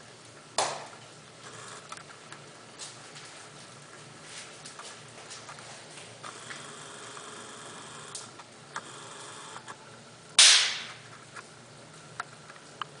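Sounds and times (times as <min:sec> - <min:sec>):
loud sharp crack: 0:00.6 - 0:01.0, 0:10.4 - 0:11.1.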